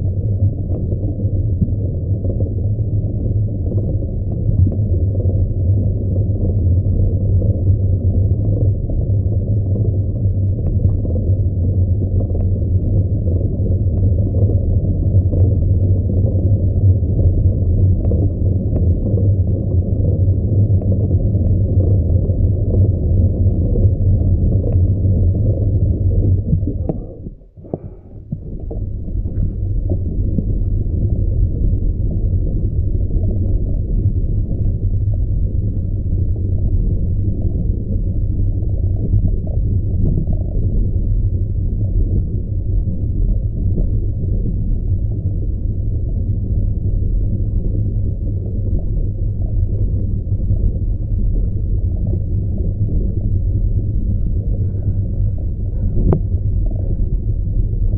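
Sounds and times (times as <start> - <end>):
wind buffeting microphone: 21.9 - 57.9.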